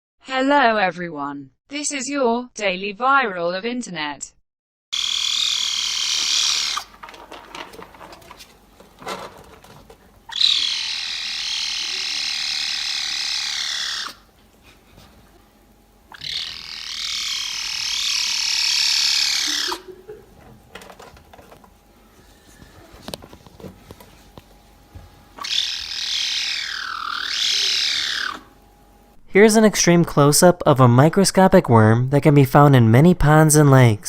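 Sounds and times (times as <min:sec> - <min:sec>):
cat making high-pitched calls: 0:05.0 - 0:06.9, 0:10.3 - 0:14.2, 0:16.1 - 0:19.9, 0:25.4 - 0:28.5
faint clicks and rustles: 0:06.8 - 0:10.3, 0:20.4 - 0:25.4.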